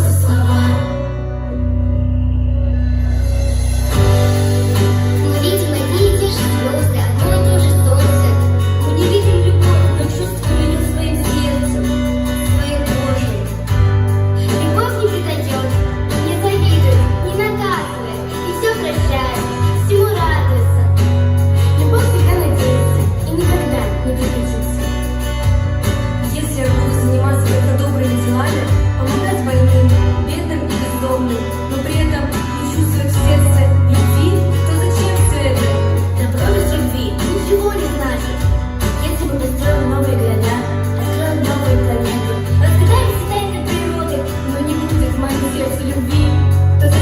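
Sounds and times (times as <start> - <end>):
person singing: 0.0 - 1.5
pop song with heavy bass: 0.0 - 47.0.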